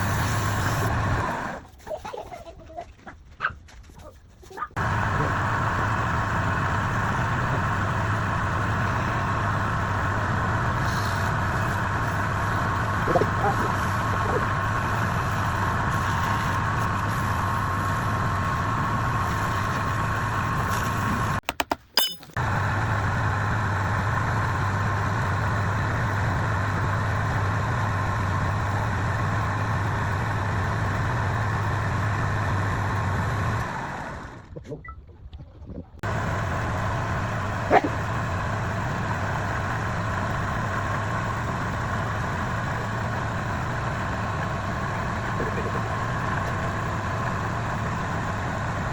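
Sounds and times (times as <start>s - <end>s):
lathe motor humming: 4.8s - 21.4s, 36.0s - 48.9s.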